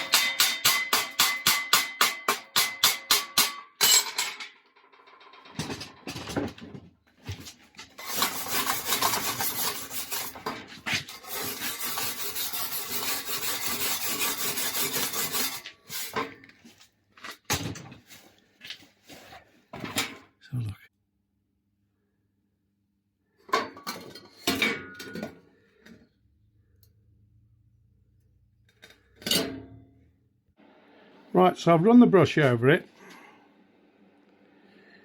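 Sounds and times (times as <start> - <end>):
wire brush scrubbing metal: 7.9 - 16.3.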